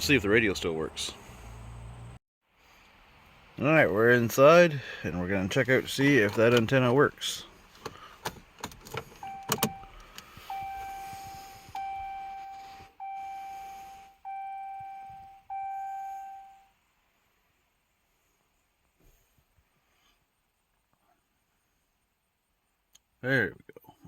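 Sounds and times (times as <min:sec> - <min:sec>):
warning chime dings: 0:10.5 - 0:16.7.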